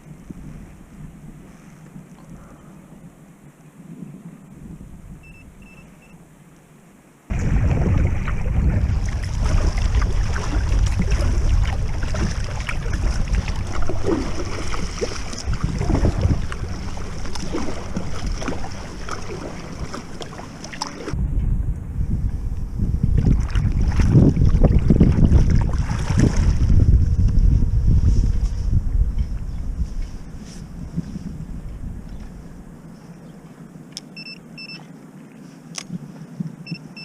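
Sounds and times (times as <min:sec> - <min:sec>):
wind buffeting microphone: 0:00.0 - 0:03.2, 0:03.8 - 0:05.6, 0:07.3 - 0:33.7
water splashing against hull: 0:07.3 - 0:21.2, 0:22.9 - 0:32.4.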